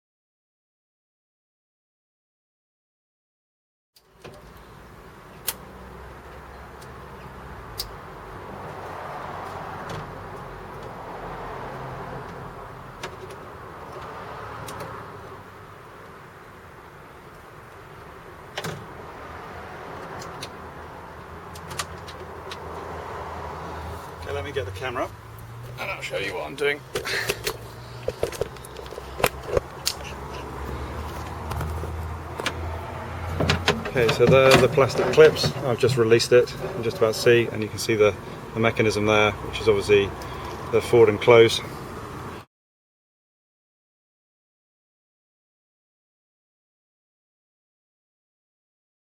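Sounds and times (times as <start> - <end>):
handling clicks and knocks: 21.5 - 22.7, 26.8 - 30.5, 31.1 - 32.6, 33.3 - 37.7.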